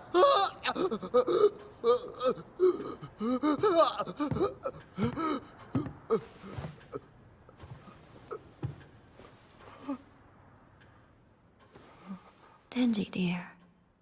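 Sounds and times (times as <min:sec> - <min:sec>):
person gasping and vocalizing: 0:00.1 - 0:07.1.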